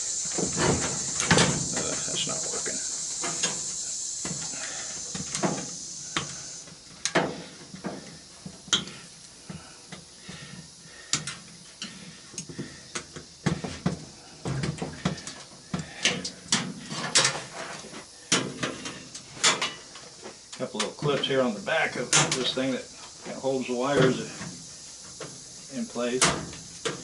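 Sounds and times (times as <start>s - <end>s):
brief hiss: 0.0s - 6.7s
tools and parts clicking and clanking: 16.0s - 17.5s, 18.3s - 19.8s.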